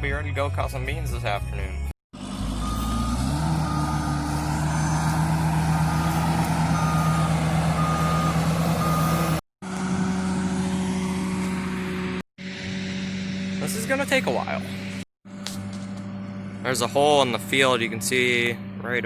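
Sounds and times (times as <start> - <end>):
heavy machine engine under load: 2.2 - 13.6
engine running steadily: 2.2 - 19.0
reversing alarm beeping: 2.3 - 10.4.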